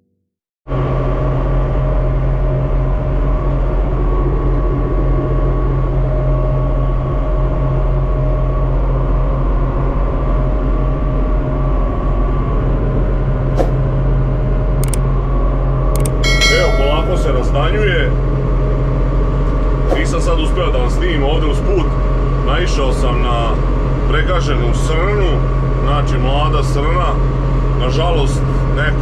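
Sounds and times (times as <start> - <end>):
short clicks: 14.8 - 15.0, 16.0 - 16.2.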